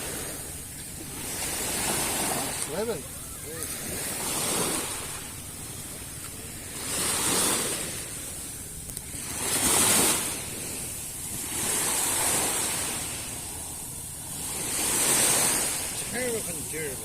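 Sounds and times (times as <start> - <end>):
small waves breaking on shore: 0.0 - 17.0.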